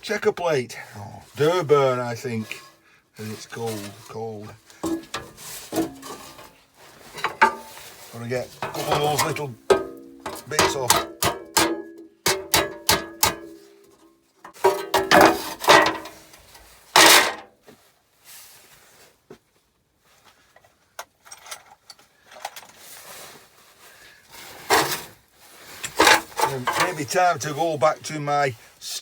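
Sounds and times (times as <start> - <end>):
light knocks and handling: 3.6 - 17.4, 25.8 - 27.2
metal clattering: 4.8 - 16.3, 16.9 - 17.5, 25.8 - 27.2
hammer striking metal chisel: 8.6 - 13.8.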